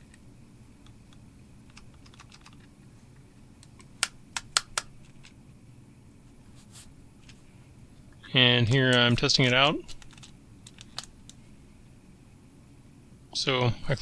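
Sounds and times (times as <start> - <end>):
faint low hum: 0.0 - 14.0.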